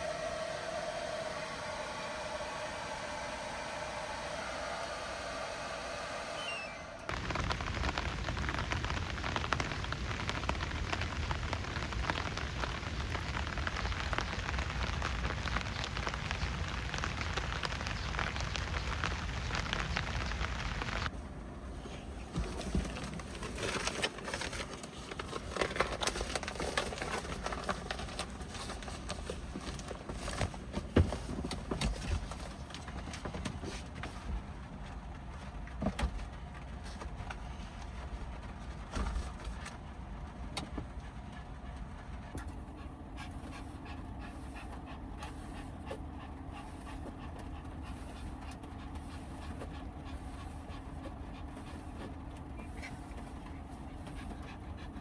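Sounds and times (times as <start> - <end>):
dog panting: 39.5 - 55.0.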